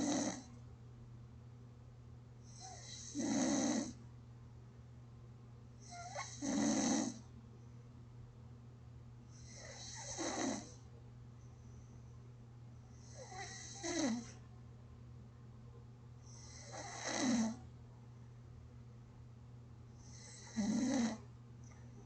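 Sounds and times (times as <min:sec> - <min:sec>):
person snoring gently: 0:00.0 - 0:00.5, 0:02.5 - 0:04.0, 0:05.9 - 0:07.2, 0:09.4 - 0:10.8, 0:13.1 - 0:14.3, 0:16.3 - 0:17.6, 0:20.0 - 0:21.2.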